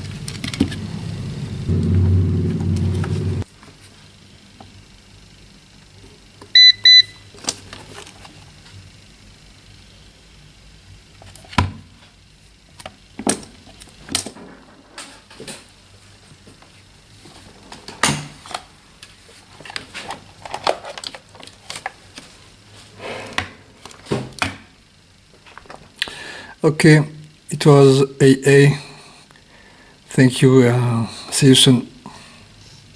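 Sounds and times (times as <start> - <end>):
faint low hum: 0.0 - 3.5.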